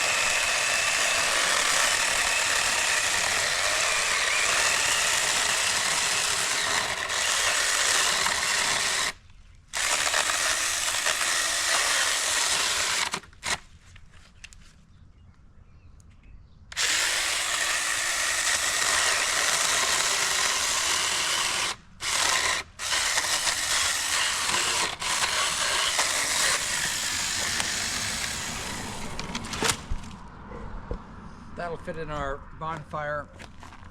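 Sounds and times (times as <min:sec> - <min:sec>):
chainsaw cutting dry wood: 0:00.0 - 0:13.7, 0:16.7 - 0:30.1.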